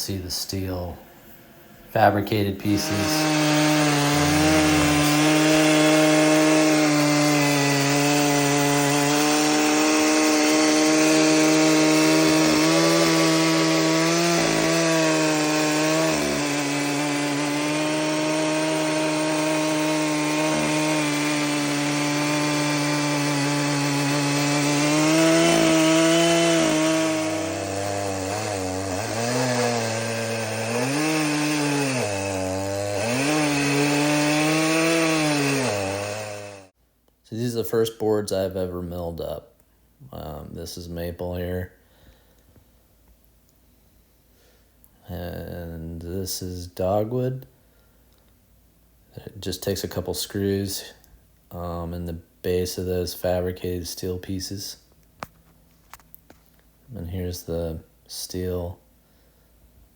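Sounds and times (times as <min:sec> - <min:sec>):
chainsaw cutting log: 0:02.0 - 0:36.8.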